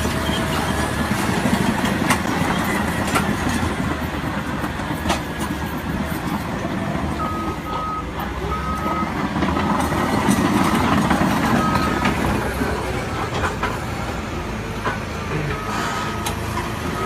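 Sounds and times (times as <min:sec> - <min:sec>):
heavy machinery engine rumble: 0:00.0 - 0:17.0
reversing alarm beeping: 0:07.2 - 0:09.2, 0:11.5 - 0:12.1, 0:15.5 - 0:16.2.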